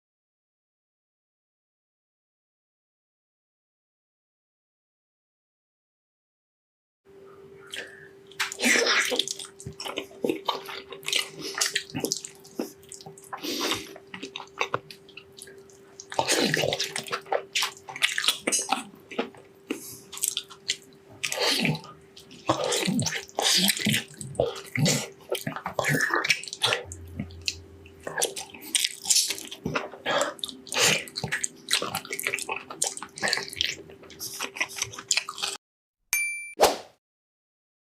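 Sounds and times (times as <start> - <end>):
faint steady hum: 7.1 - 35.5
wet slurping and chewing: 7.7 - 35.6.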